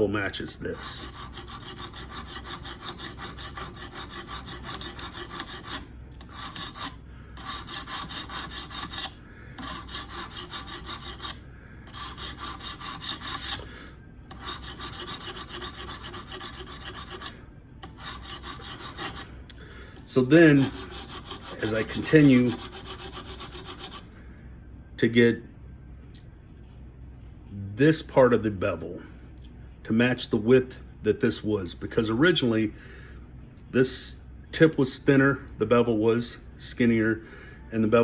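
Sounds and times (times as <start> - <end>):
sharpening stone rubbing on blade: 0.7 - 13.6, 14.3 - 19.3, 20.4 - 24.0.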